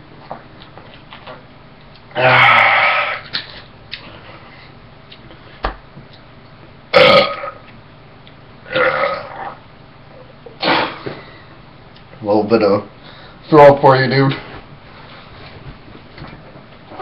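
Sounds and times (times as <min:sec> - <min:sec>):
man burping: 0:02.1 - 0:03.2, 0:06.9 - 0:07.6, 0:08.7 - 0:09.6.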